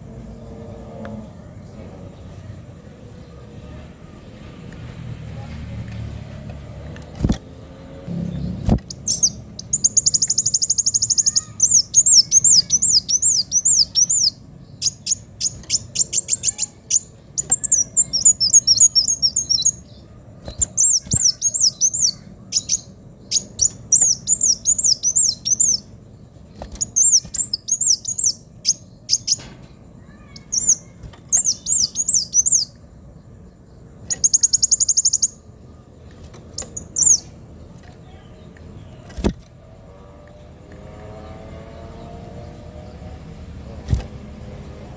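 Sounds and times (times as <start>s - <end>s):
sunbird singing: 8.1s - 43.9s.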